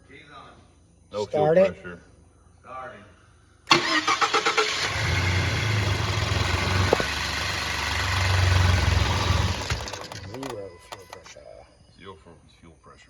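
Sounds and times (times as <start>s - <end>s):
engine cranking and starting: 3.7s - 11.3s.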